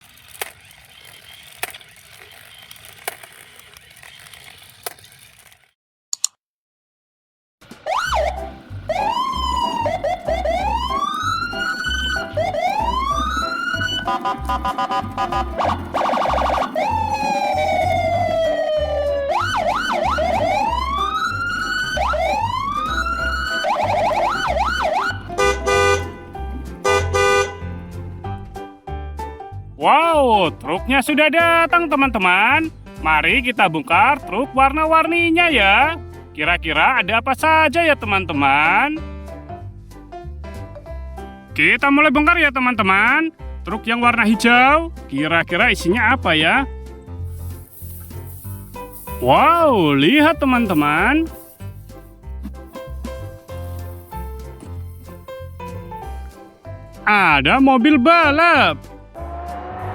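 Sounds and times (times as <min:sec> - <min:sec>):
background music with steady beat: 0:07.7 - 0:29.7, 0:46.4 - 0:59.9
siren wailing and yelping: 0:07.8 - 0:26.0
loud chord blasts: 0:24.8 - 0:28.4
low hiss: 0:47.3 - 0:49.8.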